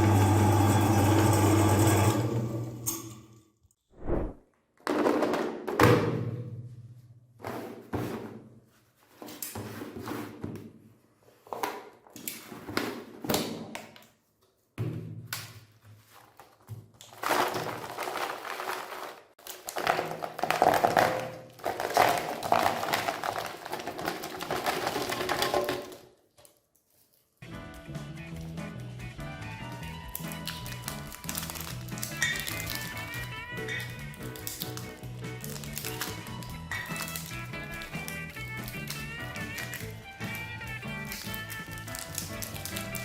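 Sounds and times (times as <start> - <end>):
meat grinder grinding: 0.0 - 3.0, 30.1 - 43.0.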